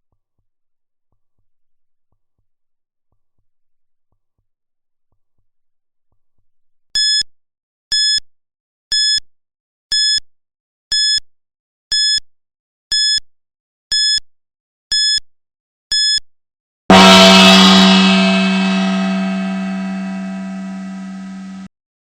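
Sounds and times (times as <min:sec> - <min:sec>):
gong ringing: 0:16.9 - 0:21.7.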